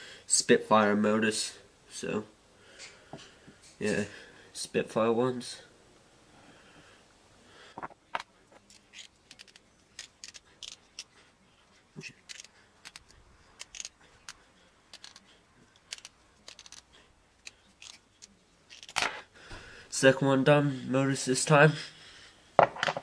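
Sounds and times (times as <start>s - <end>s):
bearings clicking and scraping: 7.7s - 19.3s.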